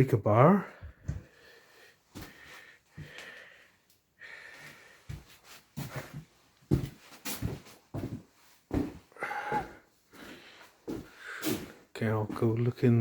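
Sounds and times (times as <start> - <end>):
person breathing: 0.7 - 6.2, 9.1 - 11.9.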